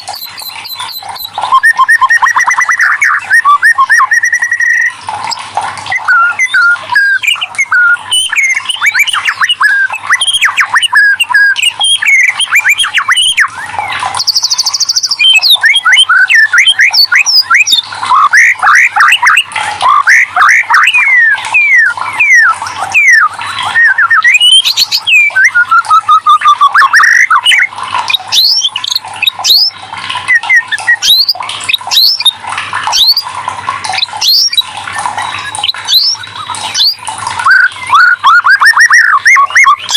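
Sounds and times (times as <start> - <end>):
bird singing varied song: 0.0 - 33.3, 33.9 - 39.9.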